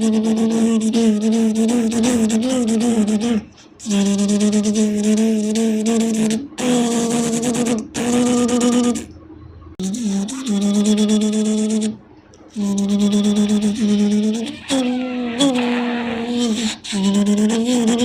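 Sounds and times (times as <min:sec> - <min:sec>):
person humming like a fly: 0:00.0 - 0:09.1, 0:09.8 - 0:12.0, 0:12.6 - 0:18.0.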